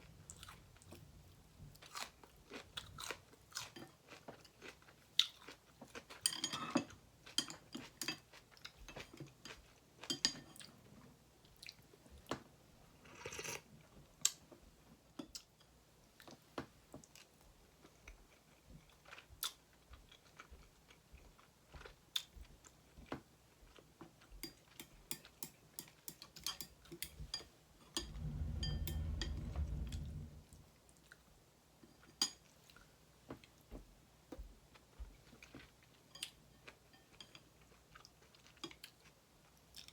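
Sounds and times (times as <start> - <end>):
low muffled rumble: 28.0 - 30.7.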